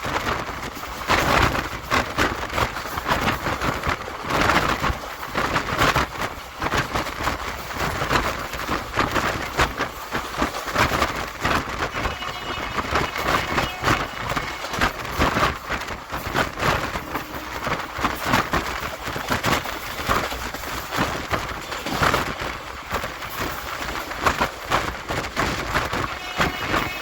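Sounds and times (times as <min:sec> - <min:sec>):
steady rushing noise: 0:00.0 - 0:27.0
train wheels clattering on rails: 0:00.0 - 0:27.0.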